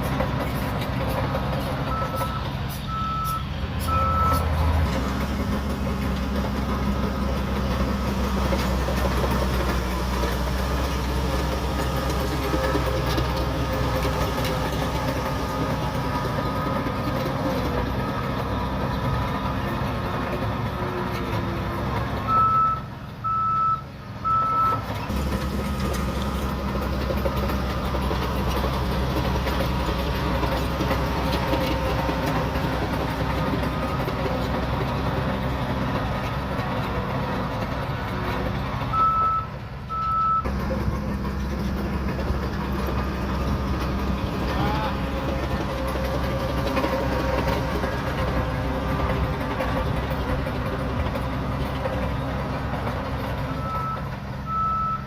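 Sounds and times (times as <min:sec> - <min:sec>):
bulldozer diesel engine running: 0:00.0 - 0:55.0
reversing alarm beeping: 0:01.9 - 0:04.5, 0:22.3 - 0:24.8, 0:38.9 - 0:40.5, 0:53.6 - 0:55.0.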